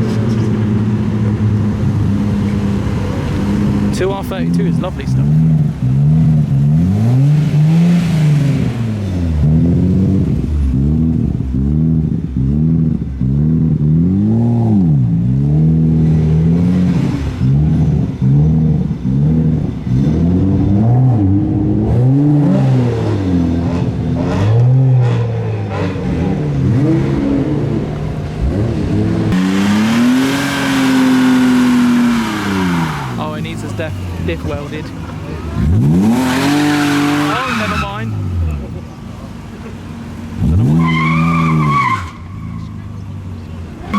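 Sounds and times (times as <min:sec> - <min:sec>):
car engine revving: 0:00.0 - 0:43.9.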